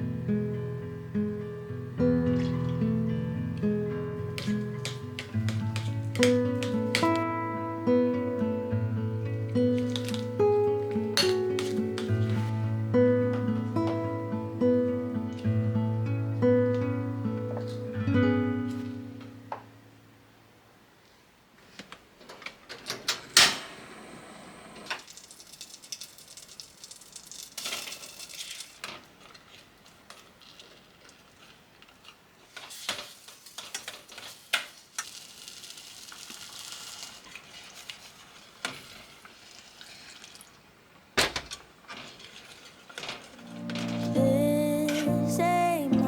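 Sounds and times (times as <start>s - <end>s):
utensils clinking against pots: 11.1s - 12.4s
food sizzling in a pan: 32.8s - 40.5s.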